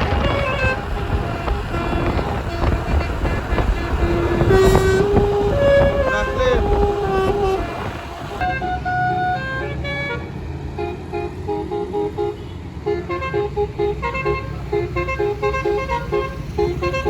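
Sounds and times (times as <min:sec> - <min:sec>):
steady low rumble: 0:00.0 - 0:08.6
bus horn playing a tune: 0:00.0 - 0:17.0.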